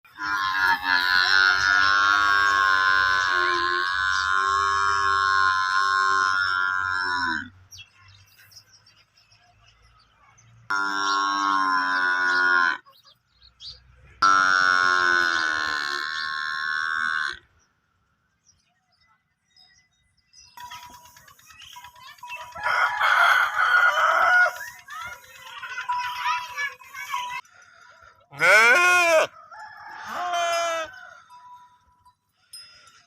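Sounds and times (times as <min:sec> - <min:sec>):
buffalo calf bawling: 0:28.3 - 0:29.3.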